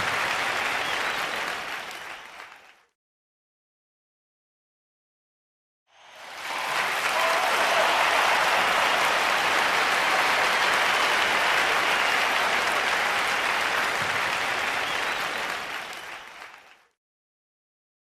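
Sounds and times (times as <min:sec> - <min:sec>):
large crowd applauding: 0:00.0 - 0:03.0, 0:06.0 - 0:17.0.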